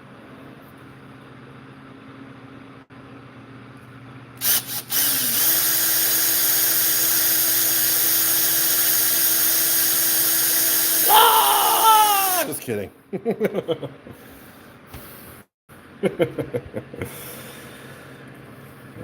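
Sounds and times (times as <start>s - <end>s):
handheld power tool running: 4.4s - 11.2s, 12.0s - 12.6s.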